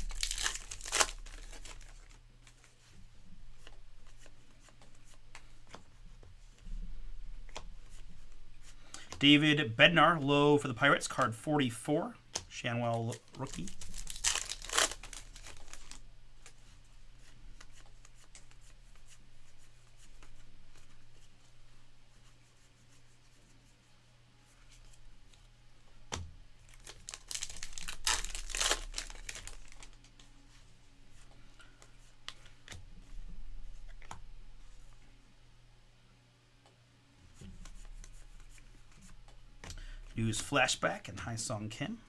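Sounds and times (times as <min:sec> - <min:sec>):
foil wrappers crinkling and tearing: 0:00.0 - 0:02.2, 0:13.1 - 0:16.6, 0:26.6 - 0:30.2.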